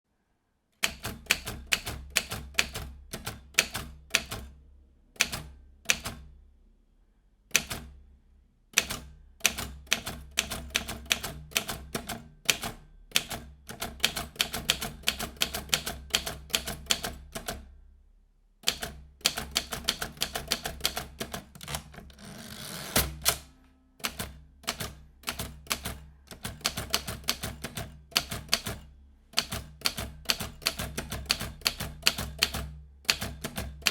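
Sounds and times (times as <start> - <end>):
typewriter carriage return sweep: 21.3 - 23.5
typewriter key strikes: 23.0 - 28.8, 29.4 - 33.9.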